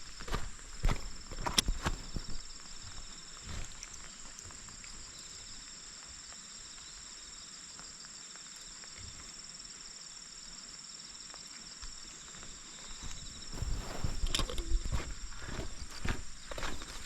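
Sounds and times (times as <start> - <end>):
faint footsteps on road: 0.0 - 4.7, 11.8 - 17.0
crickets chirring: 0.0 - 17.0.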